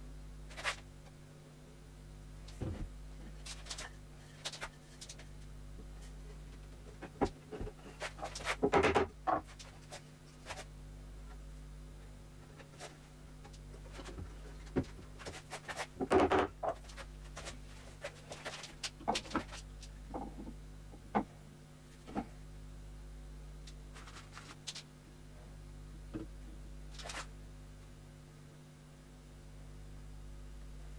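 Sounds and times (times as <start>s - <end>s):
steady low hum: 0.0s - 30.9s.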